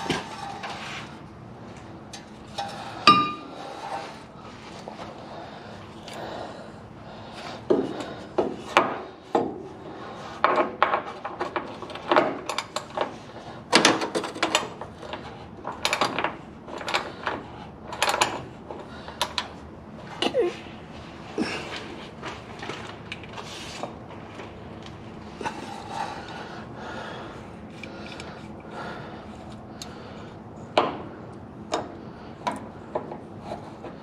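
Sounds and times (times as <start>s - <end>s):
hand tools knocking on metal: 2.6s - 3.5s.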